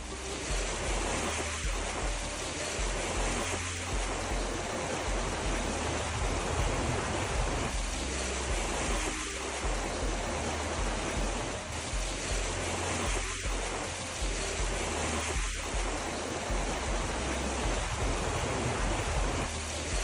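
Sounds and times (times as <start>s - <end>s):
low rumble: 0.0s - 20.0s
water rushing: 0.0s - 20.0s.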